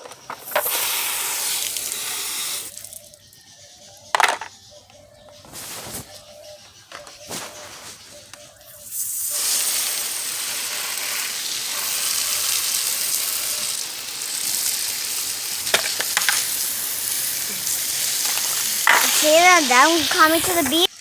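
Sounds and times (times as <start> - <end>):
loud steady hiss: 0.4 - 2.8, 8.9 - 21.0.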